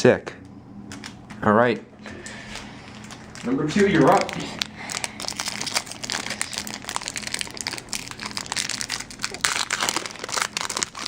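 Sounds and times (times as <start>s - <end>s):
packaging crinkling and crackling: 2.2s - 11.0s.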